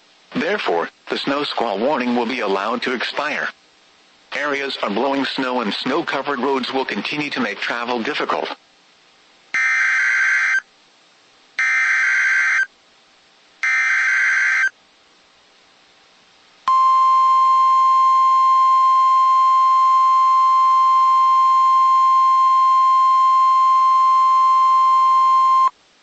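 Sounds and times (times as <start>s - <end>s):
steady warning alarm tone: 9.6s - 10.6s, 11.6s - 12.7s, 13.6s - 14.7s, 16.7s - 25.7s.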